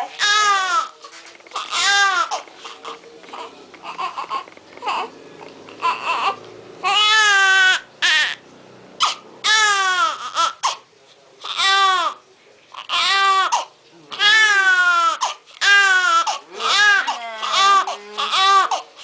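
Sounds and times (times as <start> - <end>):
newborn baby crying: 0.0 - 8.4, 9.0 - 10.8, 11.4 - 12.2, 12.8 - 19.0.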